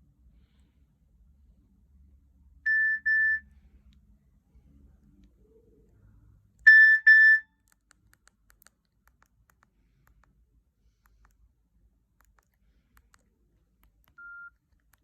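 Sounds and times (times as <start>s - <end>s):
phone high beeps: 2.7s - 3.5s, 6.7s - 7.5s, 14.2s - 14.6s.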